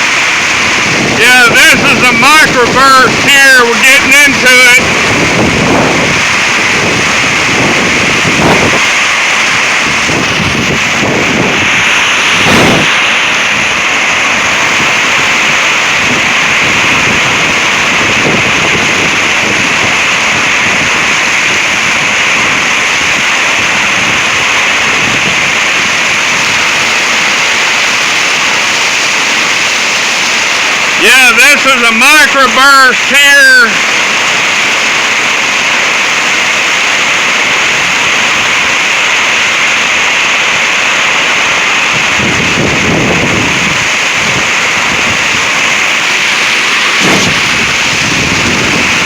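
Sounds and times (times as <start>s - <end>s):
heavy rain downpour: 0.0s - 49.0s
strong wind: 0.0s - 49.0s
low thumps: 46.9s - 48.9s.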